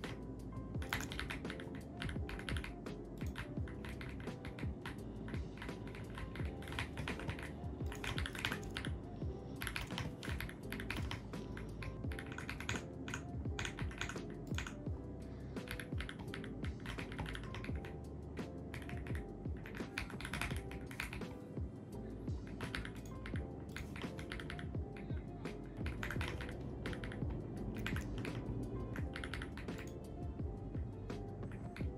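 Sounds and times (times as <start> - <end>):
soft background music: 0.0 - 31.9
mechanical keyboard key clacks: 0.8 - 5.0, 5.6 - 9.0, 9.6 - 14.8, 18.7 - 21.3.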